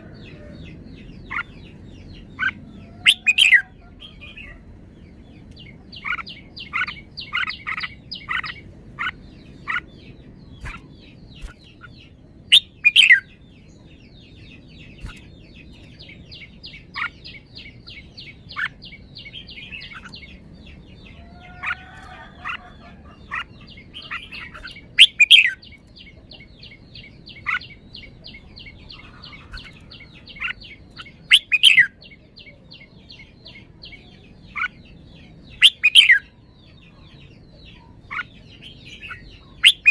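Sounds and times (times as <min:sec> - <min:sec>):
bird singing whistled notes: 0:10.6 - 0:13.4, 0:24.0 - 0:25.7, 0:30.3 - 0:32.0, 0:35.4 - 0:36.4.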